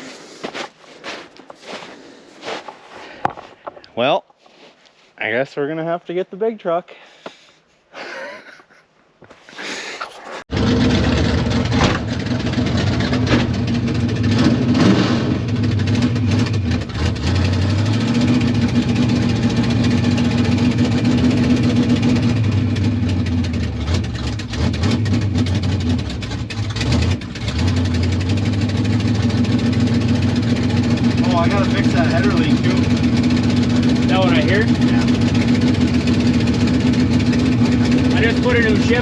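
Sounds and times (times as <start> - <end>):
truck engine idling: 15.5 - 39.0.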